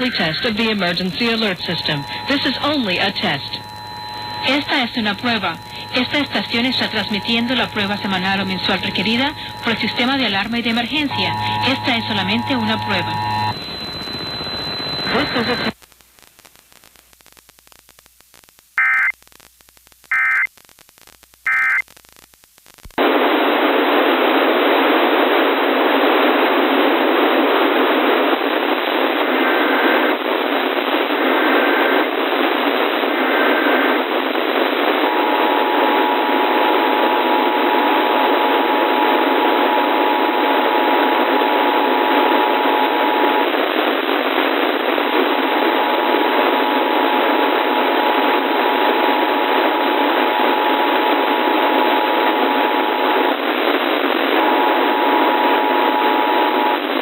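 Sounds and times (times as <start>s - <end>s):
buzzy digital data bursts: 0.0s - 15.8s, 18.8s - 19.1s, 20.1s - 20.5s, 21.4s - 21.8s
faint steady tone: 0.0s - 15.8s
radio static hiss: 0.0s - 57.0s.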